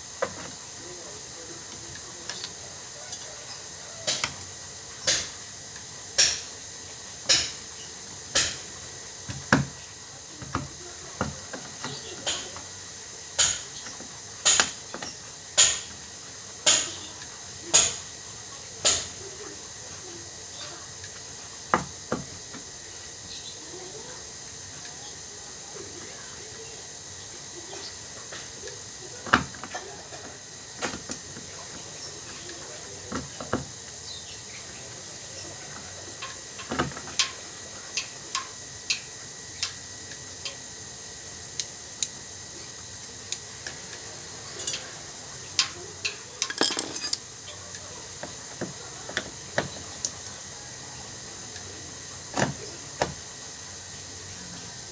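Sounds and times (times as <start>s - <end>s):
metallic clinks of hand tools: 46.4s - 47.2s.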